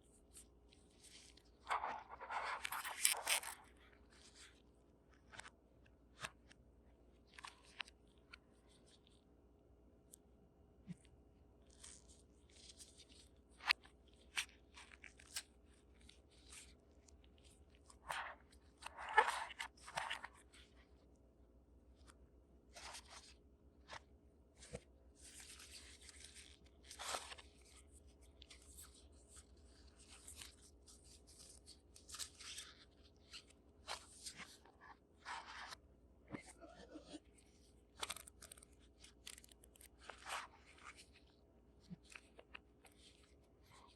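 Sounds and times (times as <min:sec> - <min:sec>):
plastic and cardboard crinkling: 0:01.0 - 0:04.5, 0:24.6 - 0:43.9.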